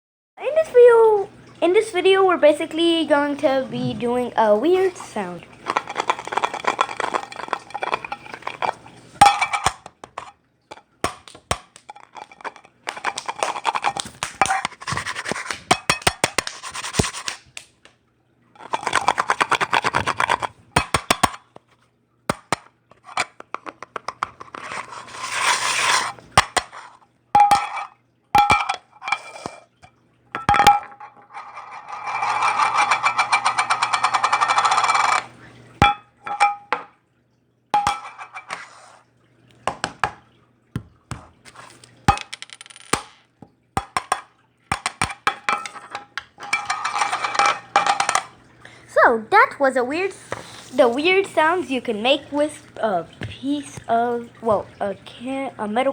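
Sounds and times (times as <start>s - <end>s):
metal can scraping rattle: 5.0s - 10.3s, 12.0s - 15.6s, 18.6s - 20.6s, 24.4s - 26.8s, 31.3s - 35.3s, 45.4s - 48.3s
sharp taps on metal can: 11.0s - 11.9s, 22.3s - 22.7s, 43.8s - 46.2s.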